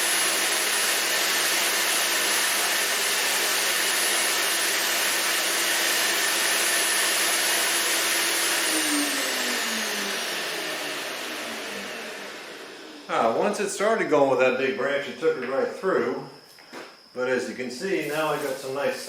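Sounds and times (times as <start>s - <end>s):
electric wood chipper whining: 0.0s - 14.3s.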